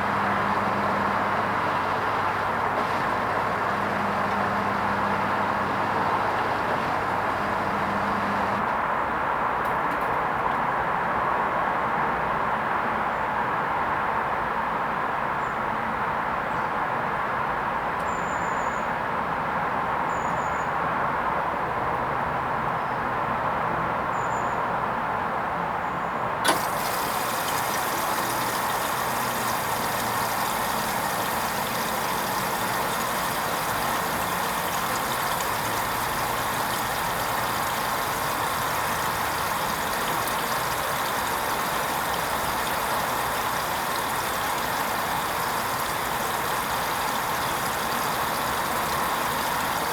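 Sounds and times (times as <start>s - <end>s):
washing machine running: 0.0s - 8.8s, 26.4s - 49.9s.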